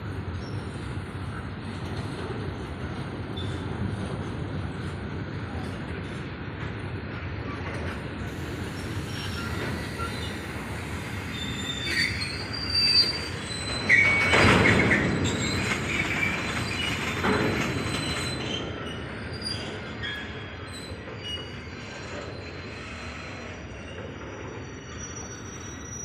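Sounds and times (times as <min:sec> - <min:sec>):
train wheels rumbling on rail: 0:00.0 - 0:26.0
high-pitched wheel squeals: 0:08.6 - 0:26.0.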